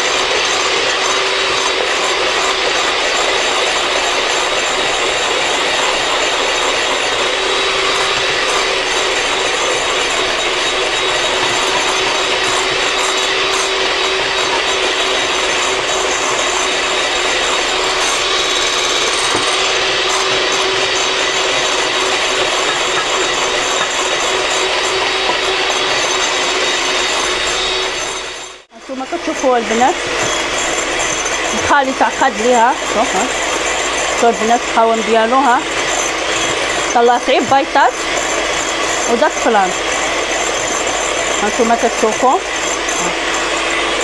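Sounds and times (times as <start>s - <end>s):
electric mixer whining: 0.0s - 44.0s.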